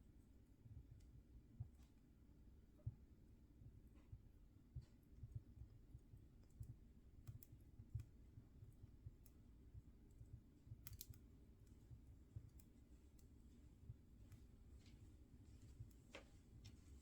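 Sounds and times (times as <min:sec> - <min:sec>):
low rumble of flame: 0:02.8 - 0:17.0
wood fire crackling: 0:10.8 - 0:17.0.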